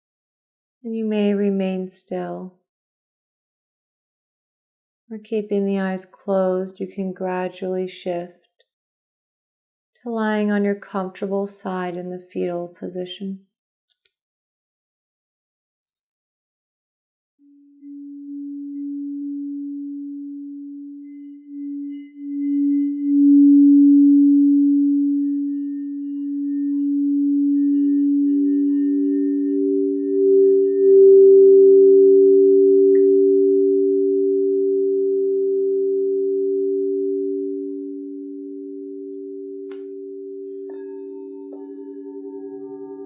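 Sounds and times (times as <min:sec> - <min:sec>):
high singing bowl ringing: 0:17.5 - 0:43.0
low singing bowl ringing: 0:17.5 - 0:43.0
faint high tones: 0:17.9 - 0:43.0.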